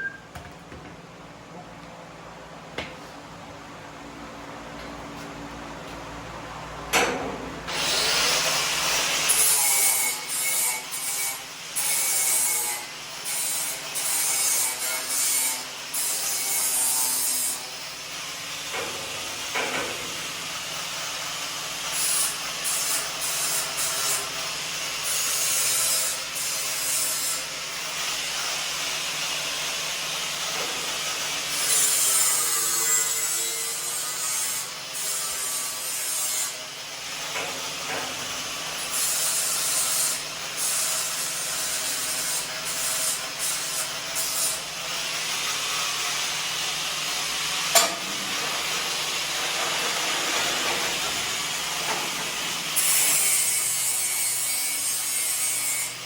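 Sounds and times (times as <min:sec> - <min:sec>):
harsh scraping on metal: 0:47.4 - 0:55.9.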